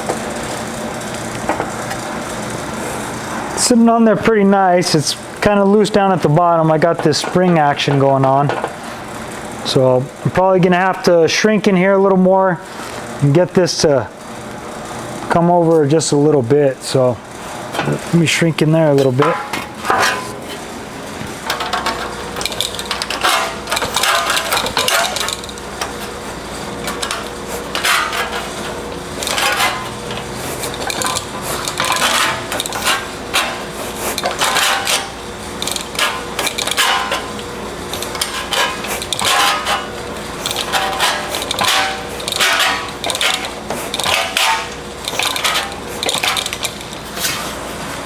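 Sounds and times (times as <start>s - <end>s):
sheet-metal shrinker jaws clacking: 21.5s - 47.2s.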